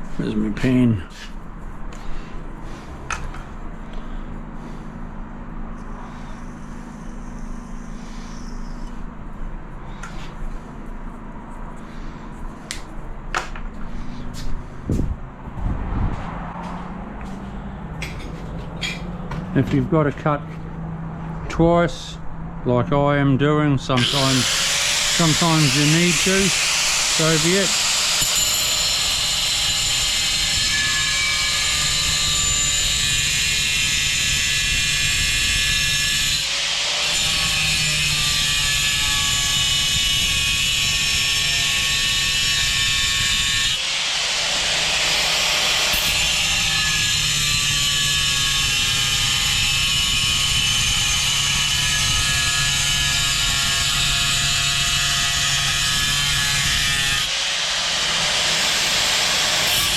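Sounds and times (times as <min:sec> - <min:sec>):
power saw whining through tile: 0:24.0 - 0:59.9.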